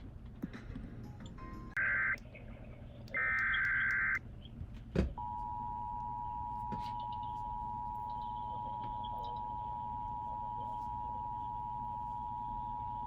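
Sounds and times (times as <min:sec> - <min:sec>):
click: 0:03.0 - 0:04.0.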